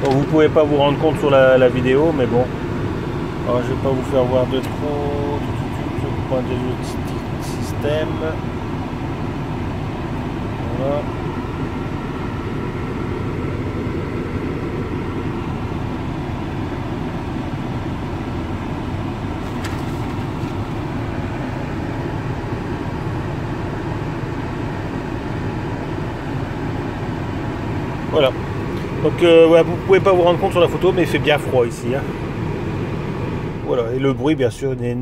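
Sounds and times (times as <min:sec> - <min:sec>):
air conditioning blower: 0:00.0 - 0:35.0
car engine running: 0:00.0 - 0:35.0.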